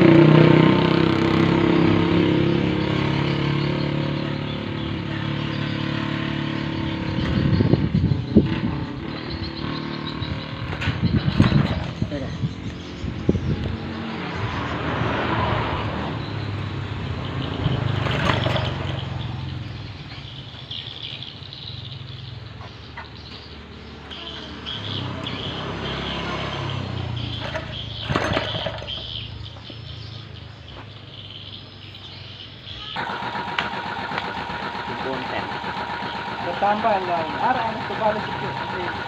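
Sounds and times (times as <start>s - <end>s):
boat engine cranking: 33.0s - 39.0s.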